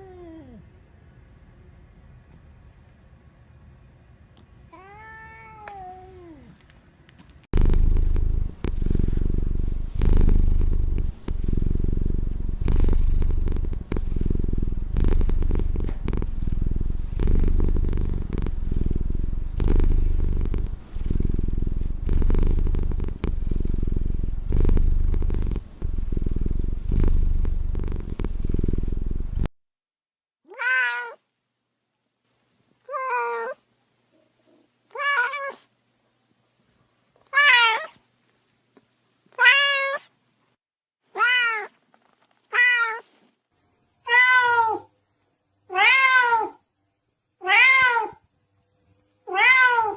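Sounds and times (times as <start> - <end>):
cat meowing: 4.7 - 6.5, 30.5 - 31.2, 34.9 - 35.7, 37.3 - 38.0, 39.4 - 40.1, 41.2 - 41.7, 42.5 - 43.1, 44.1 - 44.9, 45.7 - 46.6, 47.4 - 48.2, 49.3 - 49.9
cat purring: 7.5 - 29.5.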